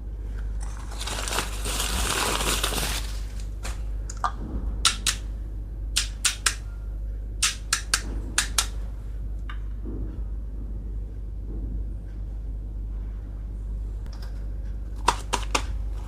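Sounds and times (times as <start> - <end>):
packaging crackling: 0.5 - 3.6.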